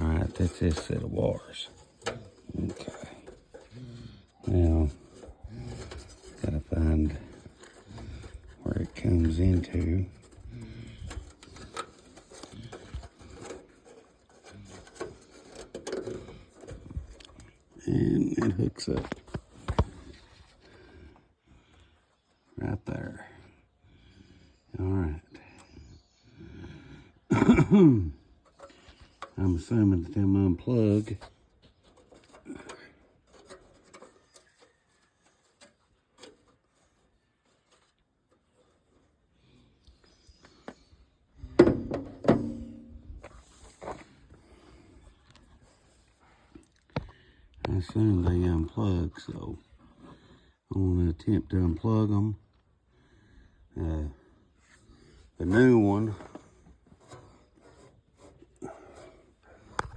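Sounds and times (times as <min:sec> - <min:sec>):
hands handling wiring and plastic: 0:00.0 - 0:21.9, 0:28.3 - 0:48.4, 0:55.3 - 0:59.9.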